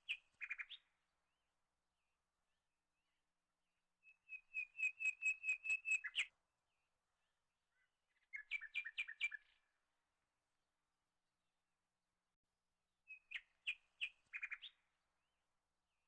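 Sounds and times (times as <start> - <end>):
bird singing whistled notes: 4.0 - 6.3, 8.2 - 9.6, 13.1 - 14.8.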